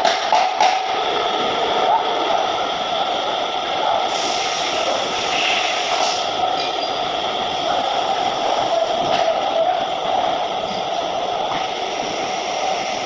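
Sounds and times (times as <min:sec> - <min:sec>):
welding arc hissing: 0:03.2 - 0:13.0.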